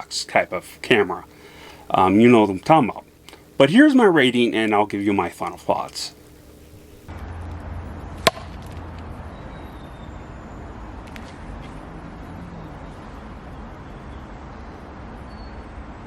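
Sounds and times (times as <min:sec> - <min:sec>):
low hum and hiss: 0:00.0 - 0:15.2
sharp knock: 0:08.2 - 0:08.6.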